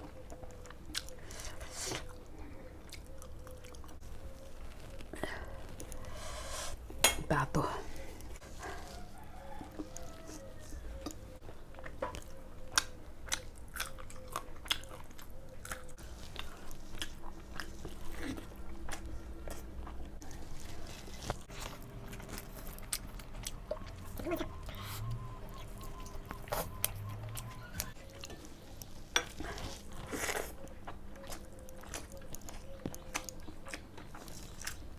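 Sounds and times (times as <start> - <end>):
person chewing crunchy food: 0.0 - 7.0, 7.9 - 34.9.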